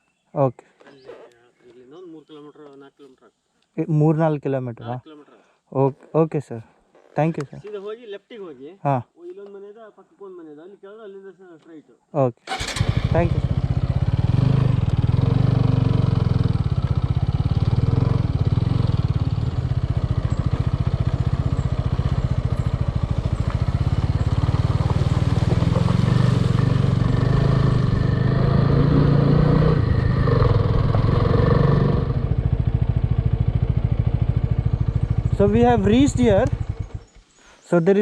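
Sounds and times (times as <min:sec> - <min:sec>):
motorcycle engine running: 0:12.5 - 0:37.3.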